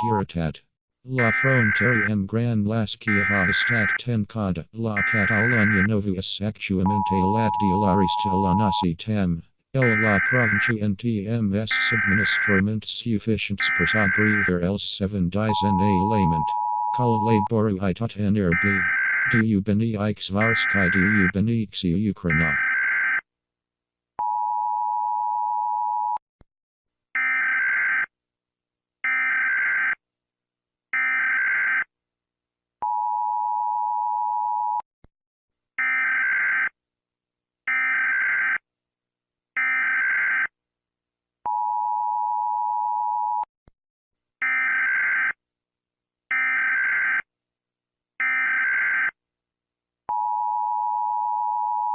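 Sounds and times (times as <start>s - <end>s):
steady low alert tone: 6.8s - 9.0s, 13.6s - 21.6s.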